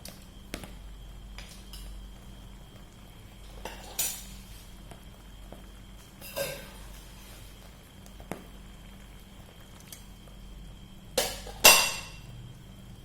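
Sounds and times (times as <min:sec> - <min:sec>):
kitchenware clinking: 0:06.2 - 0:06.8, 0:11.2 - 0:12.2.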